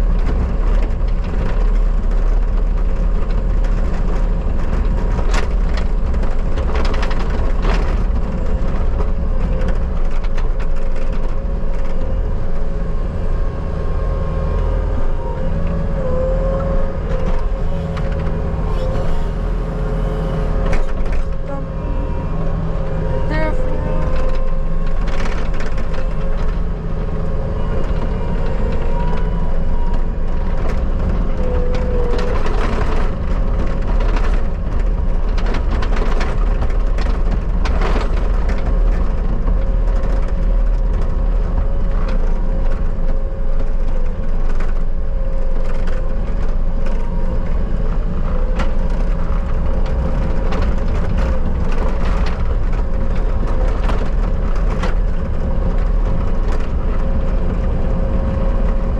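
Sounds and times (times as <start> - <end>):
skid steer hydraulic whine: 12.0 - 33.6.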